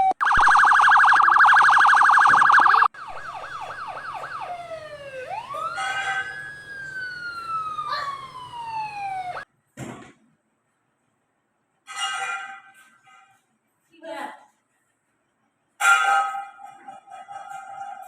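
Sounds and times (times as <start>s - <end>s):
electronic police siren: 0.0s - 9.4s.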